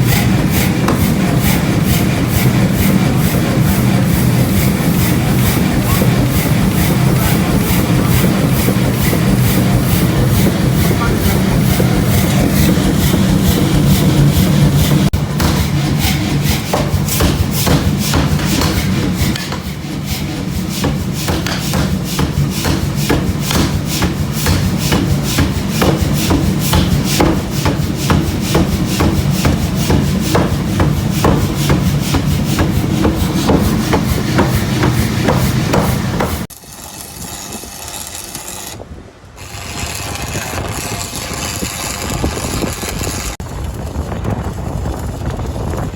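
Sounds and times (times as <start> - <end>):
hammer striking steel: 0.0 - 36.5
steady machine hum: 0.0 - 36.7.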